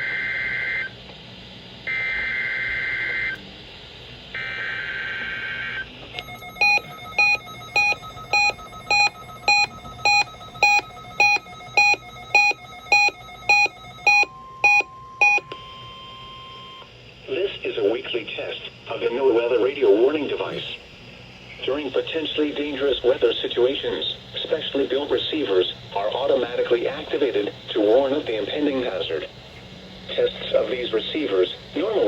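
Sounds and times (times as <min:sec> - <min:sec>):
digital warbling data bursts: 0:06.2 - 0:15.4
rapid electronic beeping: 0:06.2 - 0:16.8
steady tone: 0:06.2 - 0:16.8.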